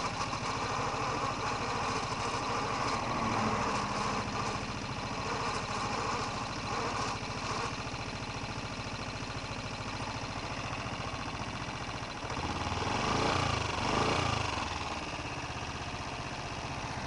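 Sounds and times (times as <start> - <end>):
motorcycle engine idling and revving: 0.0 - 17.0.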